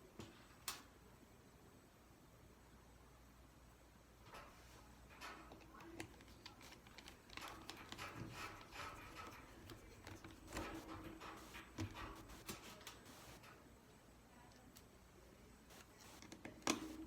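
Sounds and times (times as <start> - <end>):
tool clicking and scraping on plastic: 5.3 - 13.4.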